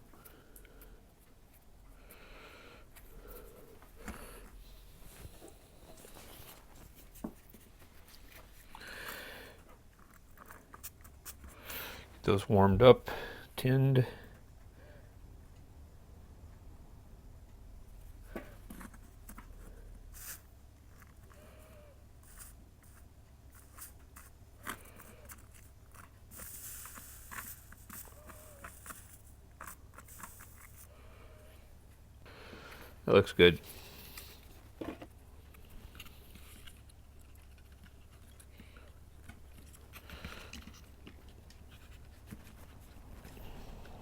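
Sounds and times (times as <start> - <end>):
soft rustle: 2.8 - 12.3, 17.9 - 44.0
soldering flux crackling and sizzling: 22.2 - 30.9.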